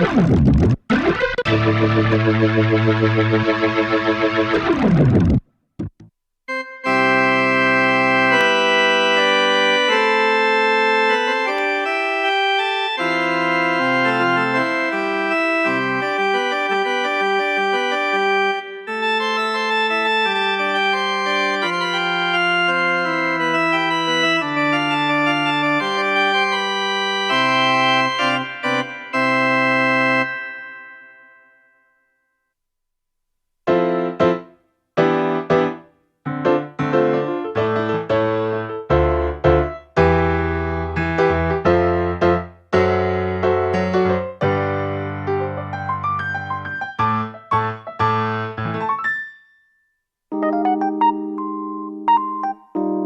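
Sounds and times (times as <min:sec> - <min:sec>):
organ playing sustained chords: 0:06.5 - 0:31.0.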